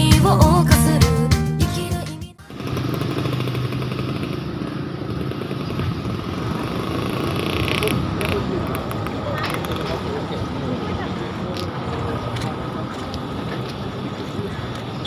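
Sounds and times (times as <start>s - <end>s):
music: 0.0s - 2.4s.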